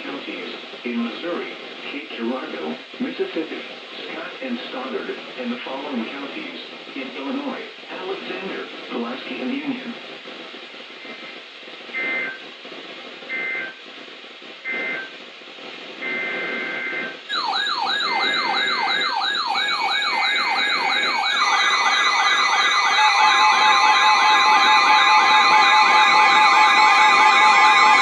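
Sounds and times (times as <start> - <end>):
steady alert tone: 17.3 - 25.8
digital data bursts: 17.3 - 28.0
electronic yelp sirens: 17.3 - 28.0.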